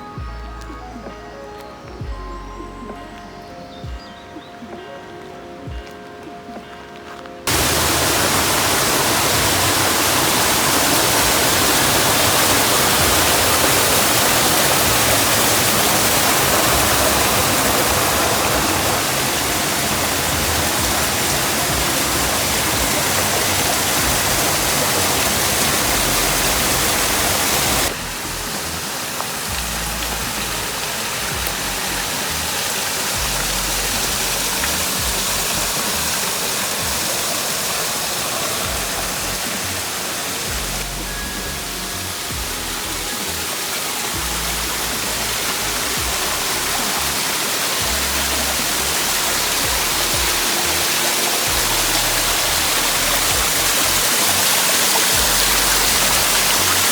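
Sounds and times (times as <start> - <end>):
waterfall rushing: 7.4 - 56.9.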